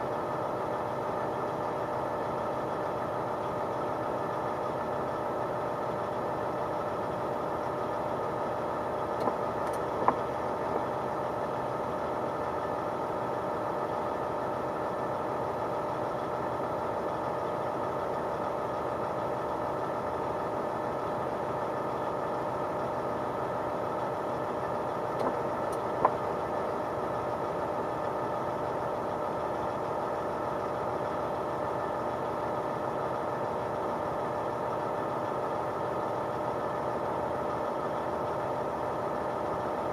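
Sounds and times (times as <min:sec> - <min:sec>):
diesel truck engine droning: 0:00.0 - 0:39.9.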